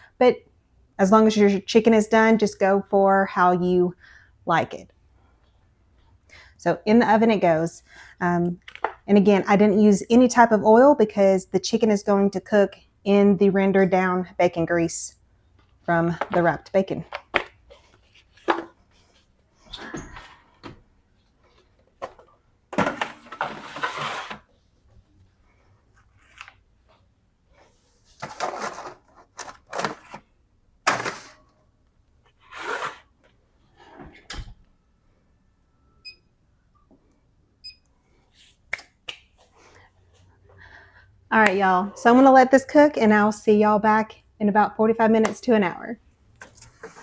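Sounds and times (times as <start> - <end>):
baking pans scraping: 22.8 - 24.5.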